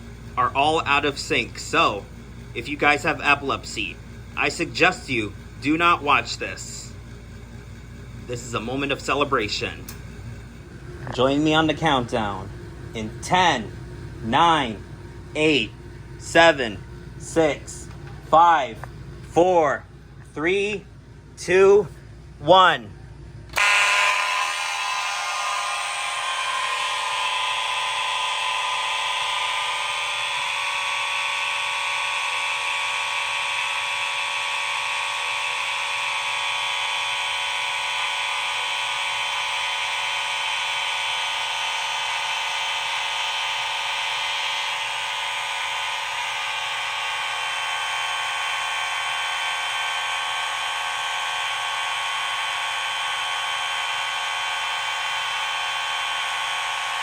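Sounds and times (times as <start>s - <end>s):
fire alarm horns: 23.5s - 57.0s.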